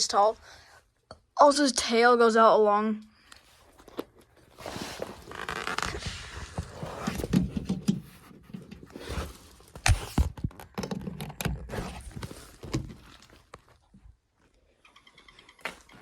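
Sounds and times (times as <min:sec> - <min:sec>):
knocks thumps and scrapes: 0:04.6 - 0:14.1.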